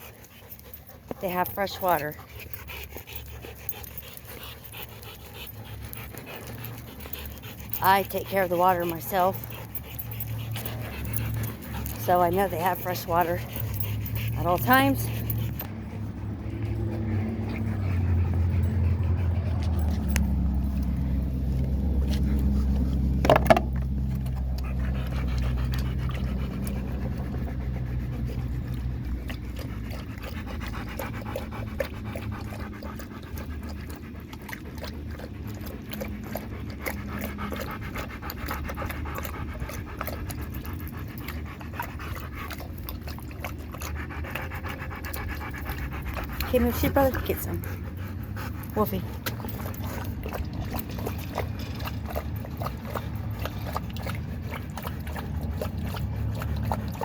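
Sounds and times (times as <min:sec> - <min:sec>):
dogs panting: 0:00.0 - 0:57.0
low rumble: 0:09.5 - 0:30.7.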